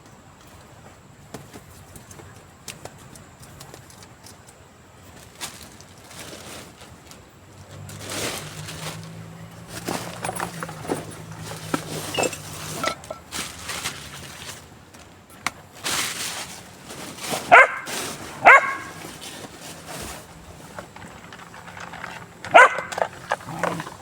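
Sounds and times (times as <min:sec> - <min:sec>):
dog yipping: 0:12.1 - 0:12.4, 0:17.5 - 0:19.0, 0:22.5 - 0:23.8
dog barking: 0:17.5 - 0:19.0, 0:22.5 - 0:23.2.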